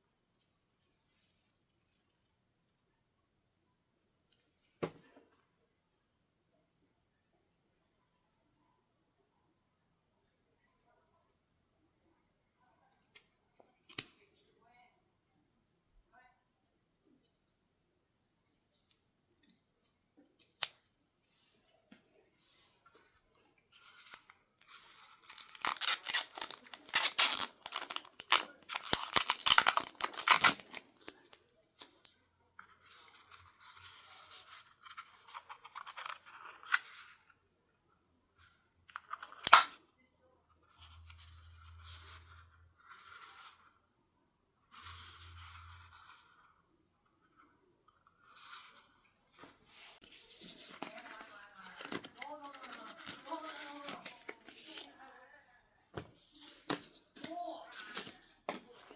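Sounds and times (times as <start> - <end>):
paper and plastic rustling and tearing: 23.9 - 31.4, 49.9 - 55.0
packaging snapping: 25.2 - 31.4.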